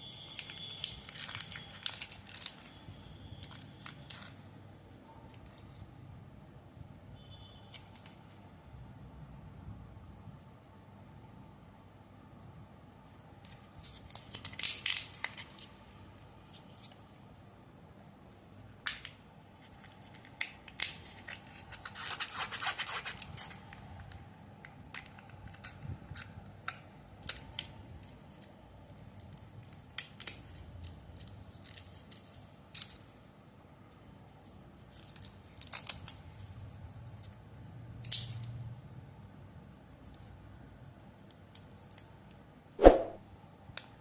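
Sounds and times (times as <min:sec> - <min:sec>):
packaging crinkling and tearing: 0:00.1 - 0:04.4, 0:13.4 - 0:15.8, 0:18.9 - 0:23.8, 0:27.2 - 0:33.0, 0:34.8 - 0:36.4.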